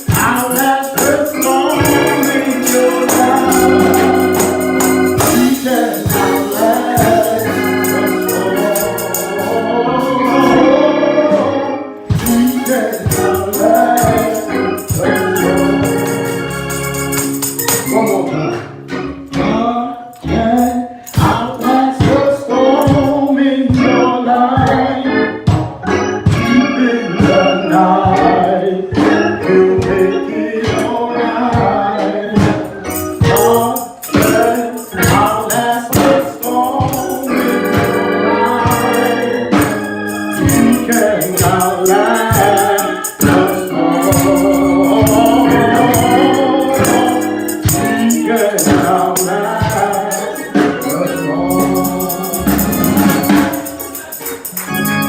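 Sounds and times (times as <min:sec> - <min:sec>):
steady drum beat: 0:00.0 - 0:10.6, 0:12.1 - 0:18.1, 0:21.1 - 0:23.3, 0:32.4 - 0:55.0
choir singing: 0:00.0 - 0:17.3, 0:17.9 - 0:25.4, 0:26.0 - 0:55.0
organ: 0:00.0 - 0:55.0.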